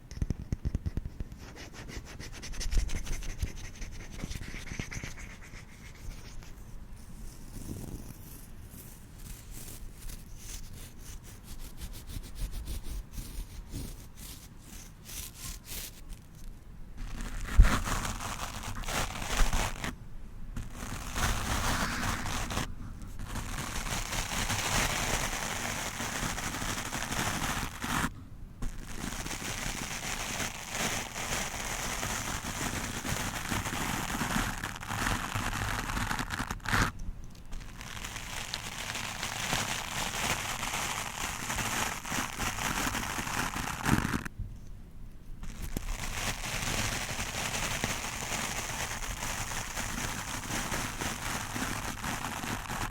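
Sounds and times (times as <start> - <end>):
brush scrubbing against microphone: 0.3 - 19.9, 20.6 - 36.9.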